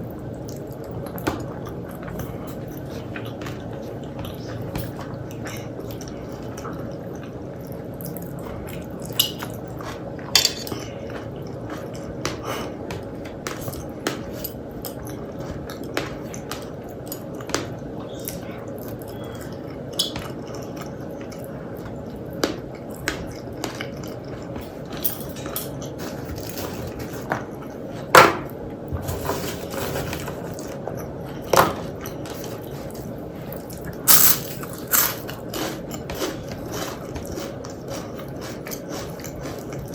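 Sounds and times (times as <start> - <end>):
cutlery clicking on dishes: 9.1 - 9.6, 10.3 - 10.9.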